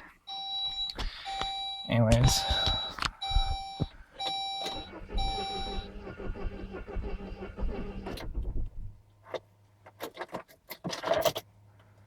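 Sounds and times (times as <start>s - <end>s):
warning chime beeping: 0.3s - 5.9s
engine cranking on starter motor: 4.2s - 8.9s.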